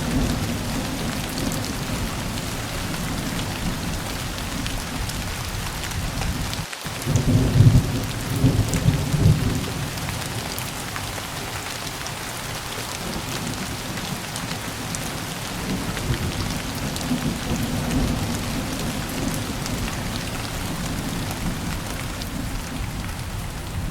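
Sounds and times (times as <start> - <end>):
low rumble of thunder: 0.0 - 23.9
raindrops ticking on surface: 0.0 - 23.9
steady rain falling: 0.0 - 23.9.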